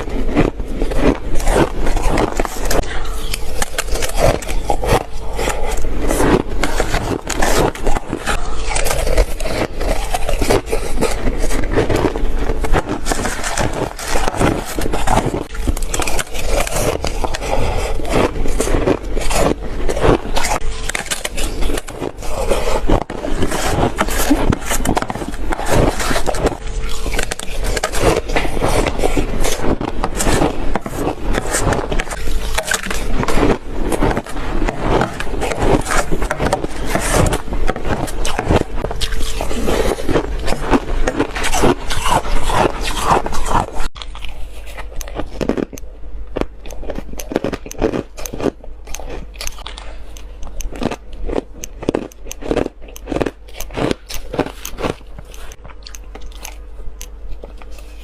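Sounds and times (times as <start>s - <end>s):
shaved ice crunching: 0.0s - 43.8s.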